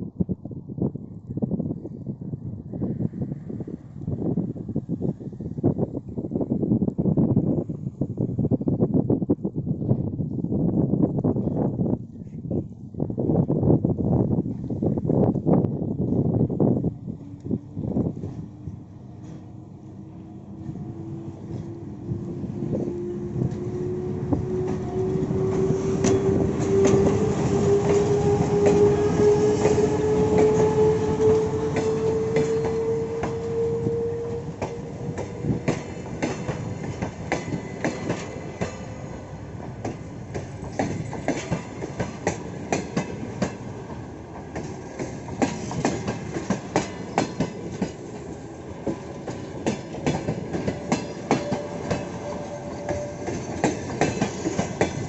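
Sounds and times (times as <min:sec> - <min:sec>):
train whine rising in pitch: 0:16.6 - 0:39.9, 0:47.0 - 0:55.0.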